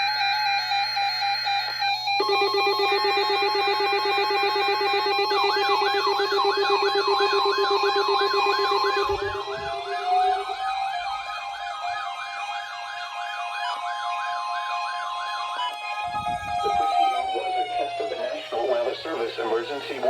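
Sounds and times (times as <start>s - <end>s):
siren-like alarm wails: 0.0s - 20.0s
steady alarm tones: 0.0s - 20.0s
low pulsing tone: 4.4s - 11.4s.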